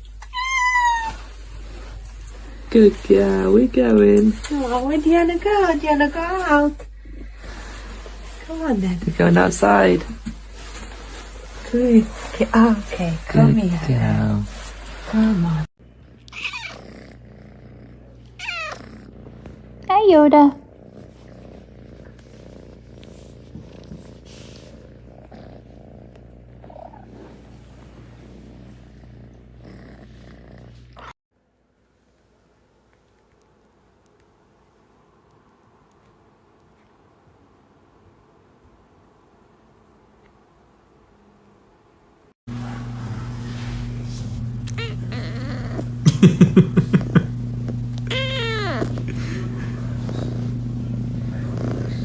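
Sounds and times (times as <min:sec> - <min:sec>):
cat chirping and meowing: 0:00.2 - 0:01.3, 0:16.3 - 0:16.9, 0:18.4 - 0:18.9, 0:44.7 - 0:46.0, 0:48.0 - 0:49.1
cat purring: 0:00.8 - 0:31.2, 0:42.6 - 0:52.0
steady hum: 0:42.5 - 0:52.0.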